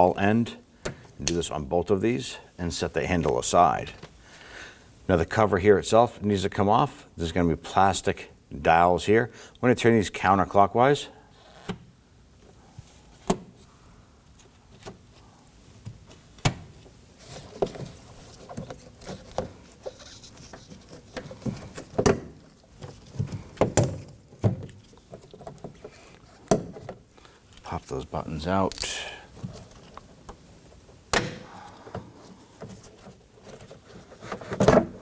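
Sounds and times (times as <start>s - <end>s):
light rubbing and handling noise: 12.4s - 31.0s, 31.6s - 35.0s.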